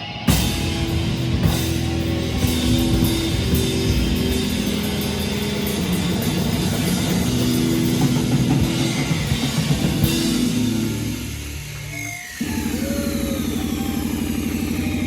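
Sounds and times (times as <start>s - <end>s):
live rock band playing: 0.0s - 11.9s.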